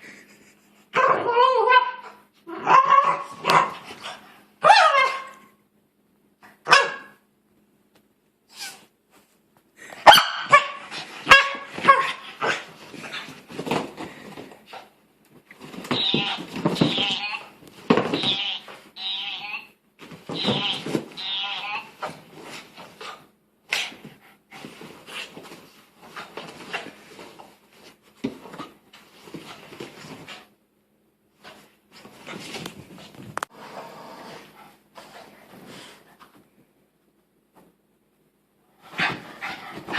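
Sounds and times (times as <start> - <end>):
dog yelping barks and cries: 4.6 - 5.4.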